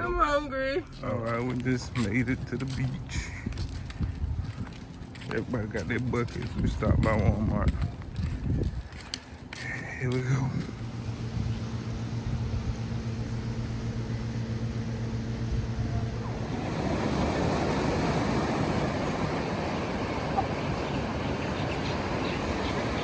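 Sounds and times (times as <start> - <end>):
low hum: 0.0 - 23.0
wind and surf rushing: 15.4 - 23.0.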